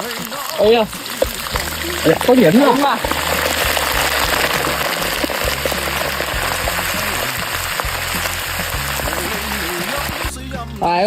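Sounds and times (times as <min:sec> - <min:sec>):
hot oil sizzling and crackling: 0:00.0 - 0:10.7.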